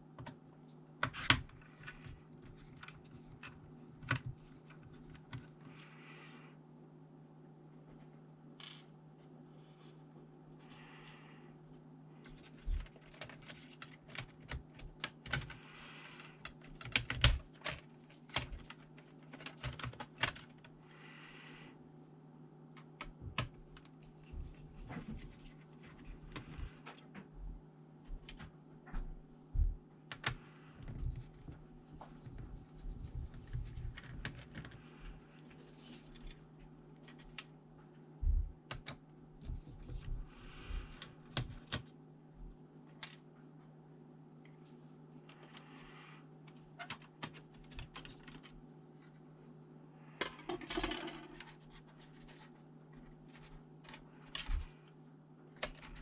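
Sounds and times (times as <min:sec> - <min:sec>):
steady low hum: 0:00.0 - 0:56.0
laptop parts clicking and scraping: 0:12.2 - 0:20.7, 0:32.2 - 0:36.4, 0:46.5 - 0:49.2, 0:55.6 - 0:56.0.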